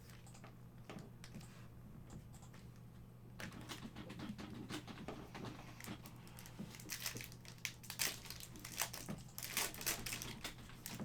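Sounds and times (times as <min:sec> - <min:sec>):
foil wrapper crinkling: 0:06.3 - 0:11.0.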